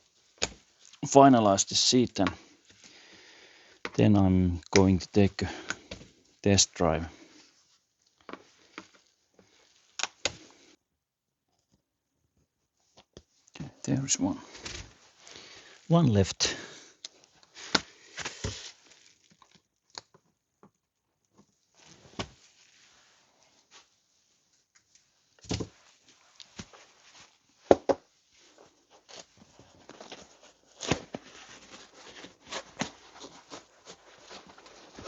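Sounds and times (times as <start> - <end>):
scraping and rustling: 28.3 - 35.0.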